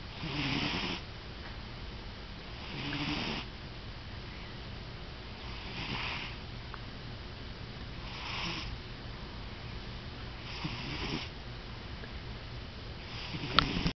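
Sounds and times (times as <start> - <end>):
cat snoring: 0.1 - 1.0, 2.5 - 3.5, 5.4 - 6.4, 8.0 - 8.7, 10.4 - 11.3, 13.0 - 13.9.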